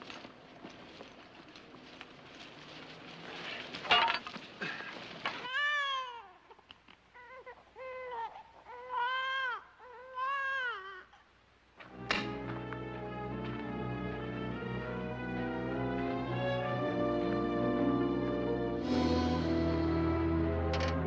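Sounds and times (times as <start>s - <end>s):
rumble of noise: 0.0s - 5.3s
high wailing cries: 5.4s - 6.4s, 7.2s - 11.2s.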